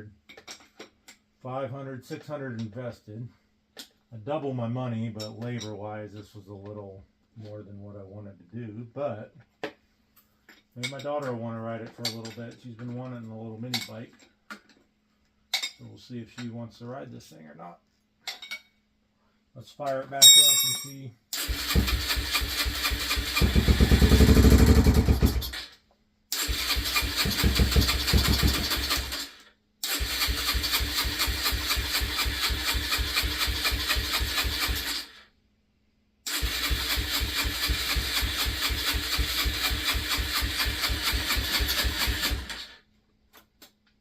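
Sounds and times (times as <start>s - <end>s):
motorcycle engine firing: 21.5s - 25.6s, 26.4s - 29.2s.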